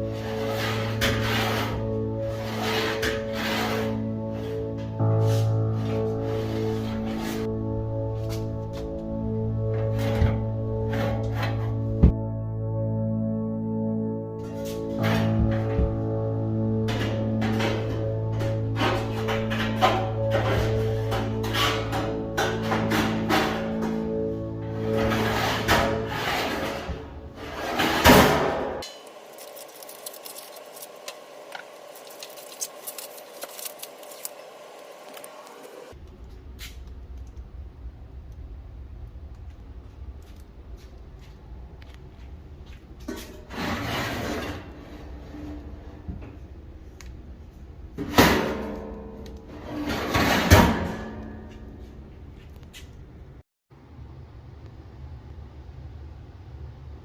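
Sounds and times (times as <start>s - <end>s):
music: 0.0s - 28.8s.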